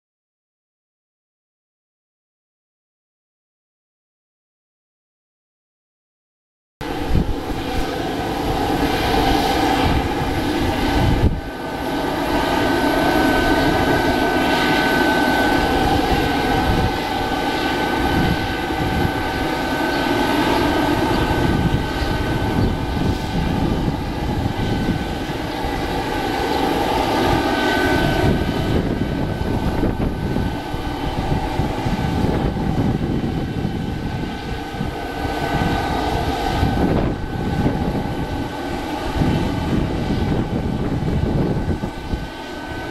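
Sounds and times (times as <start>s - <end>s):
jet engines running: 6.8s - 42.9s.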